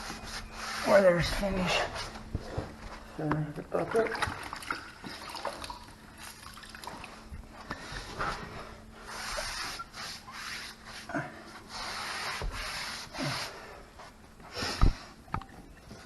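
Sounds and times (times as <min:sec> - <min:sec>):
wet rag wiping wood: 0:00.0 - 0:02.1, 0:07.8 - 0:13.8.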